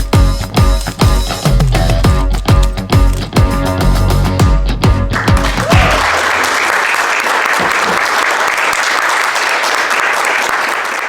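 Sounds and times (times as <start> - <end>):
audience applauding: 5.1 - 11.0.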